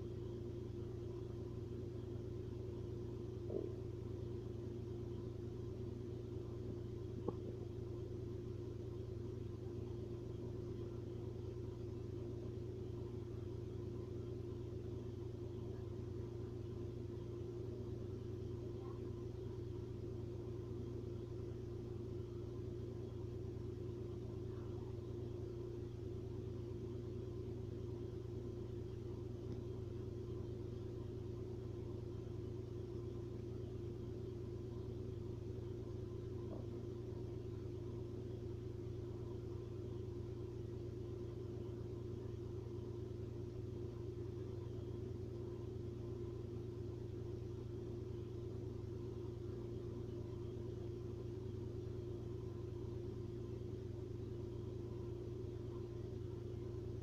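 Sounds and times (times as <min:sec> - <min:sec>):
stomach gurgle: 0:07.2 - 0:07.8.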